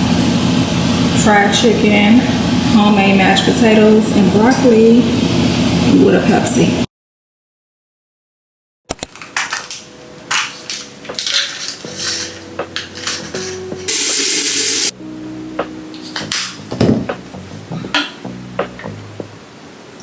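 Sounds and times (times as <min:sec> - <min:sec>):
dishes and cutlery clattering: 0:10.3 - 0:13.7
loud hiss: 0:13.9 - 0:15.0.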